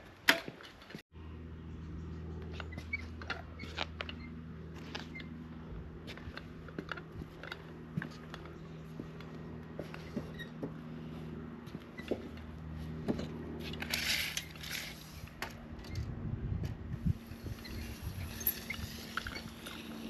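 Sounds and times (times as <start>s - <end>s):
low machine hum: 1.2s - 20.0s.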